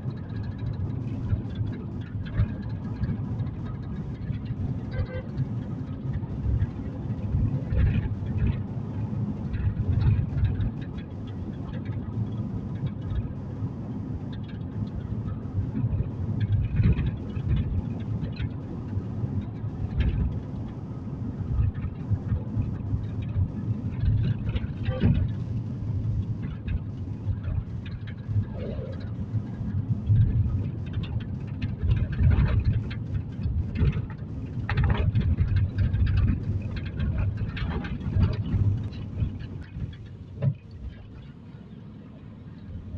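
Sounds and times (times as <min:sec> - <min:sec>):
road and engine rumble: 0:00.0 - 0:42.9
knocks and rattles: 0:21.5 - 0:41.1.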